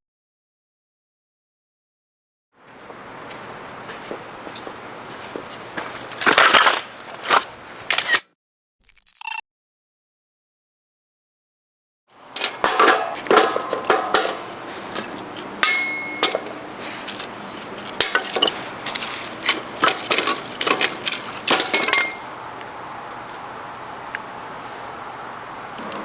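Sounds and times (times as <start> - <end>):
dishes clinking and knocking: 12.3 - 16.7, 17.8 - 22.3
short metallic rings: 15.6 - 16.7, 21.5 - 22.3.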